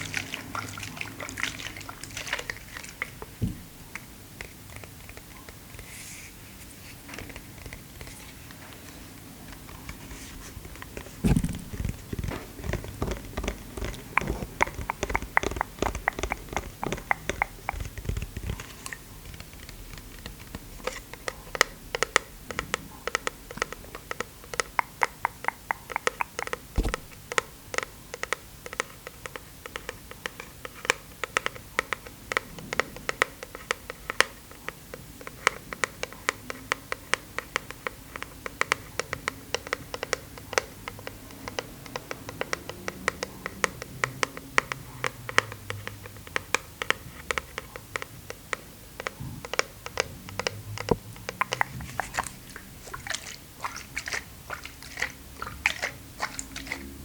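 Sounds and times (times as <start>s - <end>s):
rapid clicking and tapping: 10.6s - 34.3s.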